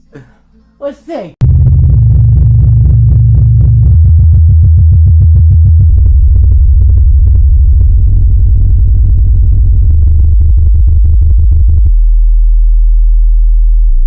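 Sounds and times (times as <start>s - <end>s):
electronic synthesizer music: 1.4s - 12.4s.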